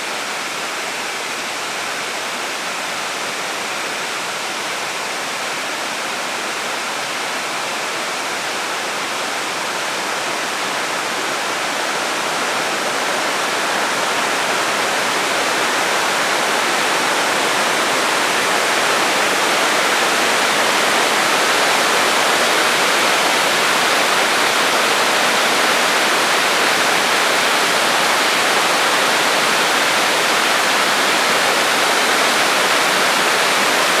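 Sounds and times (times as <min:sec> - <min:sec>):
waterfall rushing: 0:08.1 - 0:34.0.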